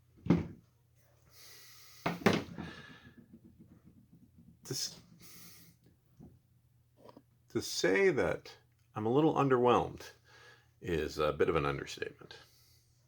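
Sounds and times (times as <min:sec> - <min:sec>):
man breathing: 0:01.2 - 0:03.3, 0:05.1 - 0:05.9, 0:10.2 - 0:10.8.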